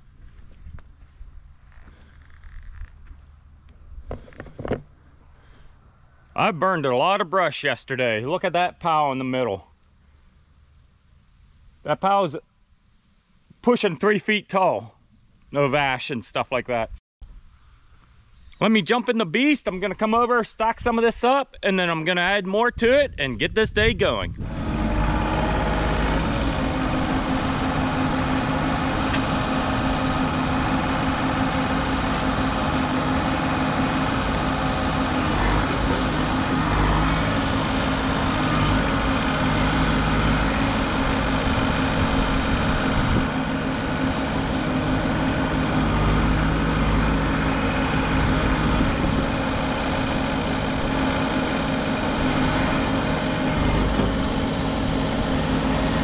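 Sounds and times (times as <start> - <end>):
excavator diesel engine running: 23.6 - 56.0.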